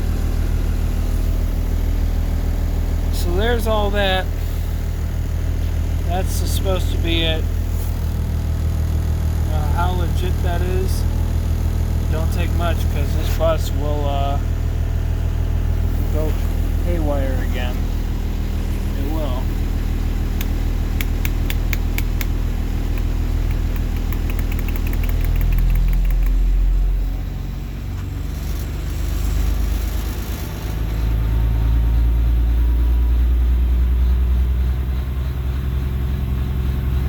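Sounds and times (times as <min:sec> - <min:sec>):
diesel bus engine running: 0:00.0 - 0:37.0
sharp clicks: 0:20.4 - 0:26.5.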